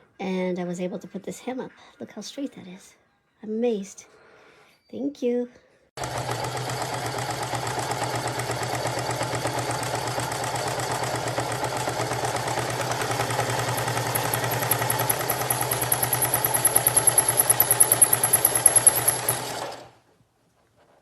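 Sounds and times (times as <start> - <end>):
sewing machine running: 6.0 - 20.0.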